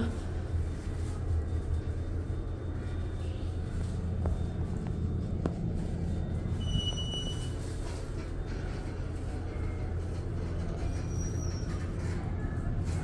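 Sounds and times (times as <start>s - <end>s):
low machinery hum: 0.0s - 13.0s.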